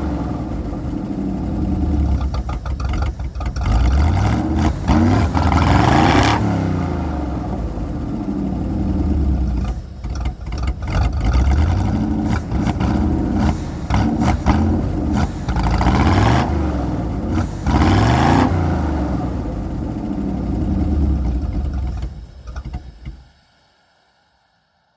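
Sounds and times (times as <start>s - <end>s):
engine revving: 0.0s - 22.2s.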